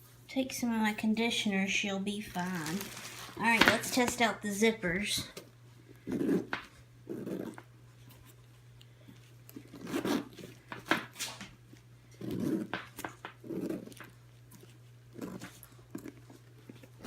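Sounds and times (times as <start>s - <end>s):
muffled handling sounds: 2.2s - 4.3s
zippers rasping open and shut: 6.1s - 6.5s, 7.1s - 7.6s, 9.6s - 10.6s, 12.2s - 12.7s, 13.4s - 16.2s.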